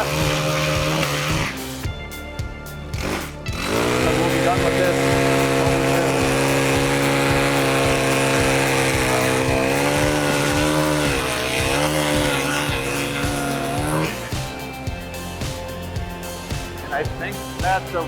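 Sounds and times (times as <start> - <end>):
wood chipper engine bogging: 0.0 - 1.8, 3.0 - 14.7.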